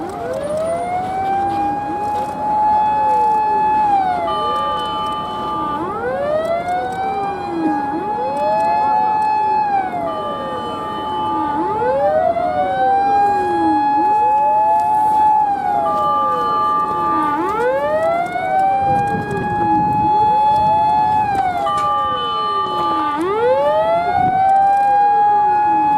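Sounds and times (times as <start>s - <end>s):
fire truck sirens wailing: 0.0s - 25.9s
heavy vehicle rumble: 0.0s - 25.9s.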